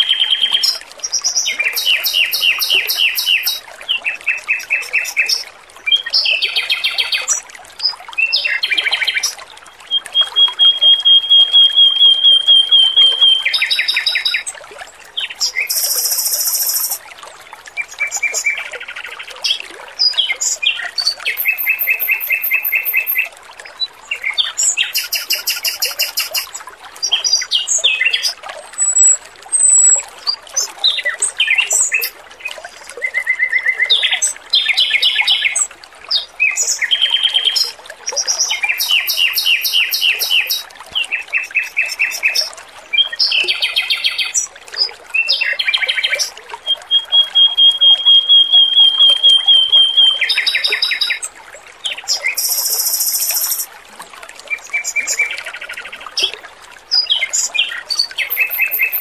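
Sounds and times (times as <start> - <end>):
water trickling: 0.0 - 59.0
bird singing trills: 1.6 - 3.6, 9.9 - 14.4, 15.5 - 17.0, 21.3 - 23.3, 24.8 - 26.5, 28.8 - 30.0, 38.5 - 42.5, 45.2 - 51.2, 52.3 - 53.7, 58.0 - 59.0.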